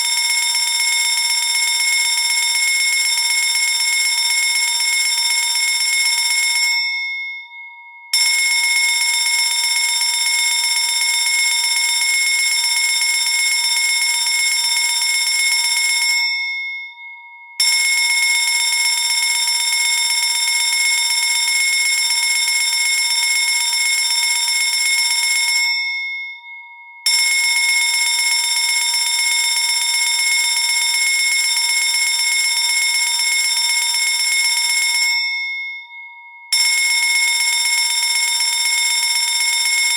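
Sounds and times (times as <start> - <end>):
fire alarm bell ringing: 0.0 - 39.9.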